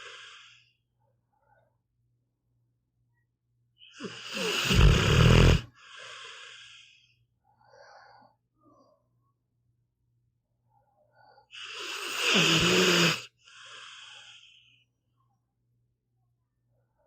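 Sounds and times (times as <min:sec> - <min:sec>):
dog snoring: 0:04.0 - 0:06.7, 0:11.6 - 0:14.4.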